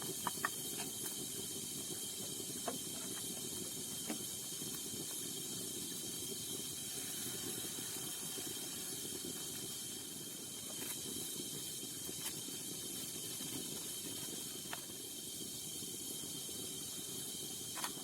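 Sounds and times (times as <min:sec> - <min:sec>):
insects chirring: 0:00.0 - 0:07.7.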